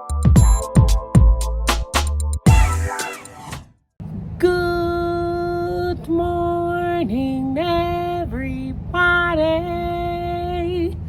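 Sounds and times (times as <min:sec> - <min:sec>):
woman singing: 0:04.4 - 0:11.0.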